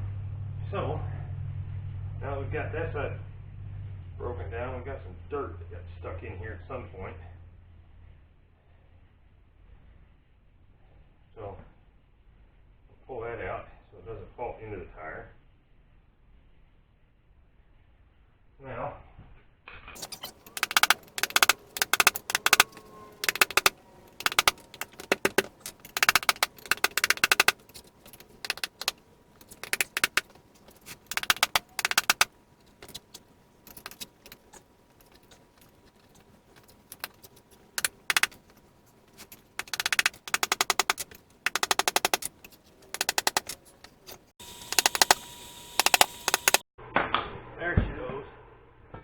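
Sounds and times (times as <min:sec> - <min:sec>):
ratcheting hand tool clicking: 0:20.0 - 0:45.2, 0:45.8 - 0:46.6.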